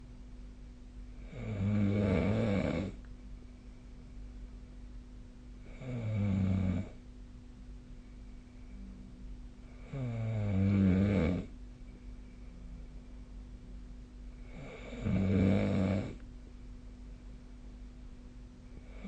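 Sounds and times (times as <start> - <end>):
faint steady hum: 0.0 - 19.0
person snoring: 1.2 - 3.0, 5.6 - 7.0, 9.7 - 11.5, 14.4 - 16.2.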